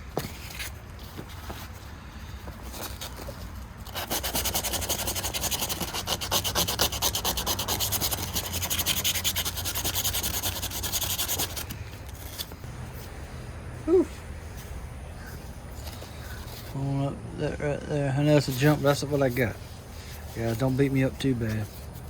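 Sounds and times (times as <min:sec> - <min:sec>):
sandpaper rubbing on knife: 0:02.8 - 0:12.5, 0:18.4 - 0:22.0.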